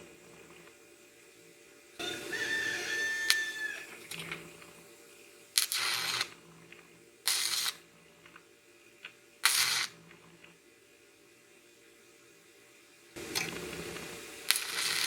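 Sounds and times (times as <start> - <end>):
welding arc crackling: 2.0 - 10.6, 13.2 - 15.0.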